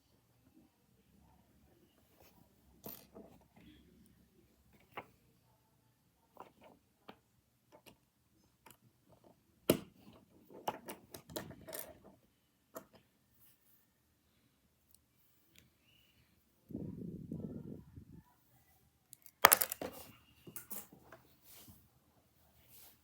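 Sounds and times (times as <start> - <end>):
plastic pieces clicking: 19.1 - 19.9.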